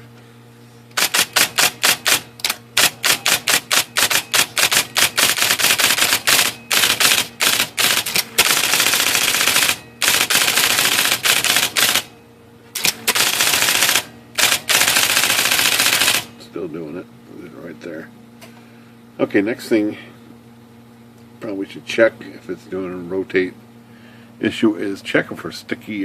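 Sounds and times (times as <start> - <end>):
electric typewriter keystrokes: 0.9 - 12.1, 12.8 - 16.3
typewriter motor hum: 0.9 - 12.1, 12.7 - 16.4.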